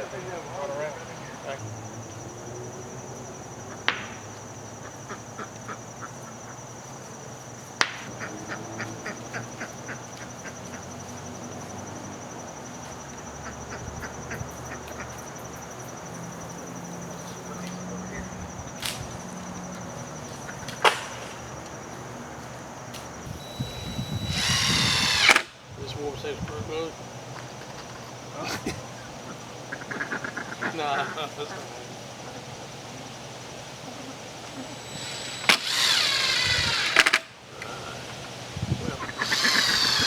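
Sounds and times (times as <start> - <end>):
small clicks of tools: 18.8 - 19.1, 35.4 - 37.7
steady high-pitched hum: 21.8 - 27.2.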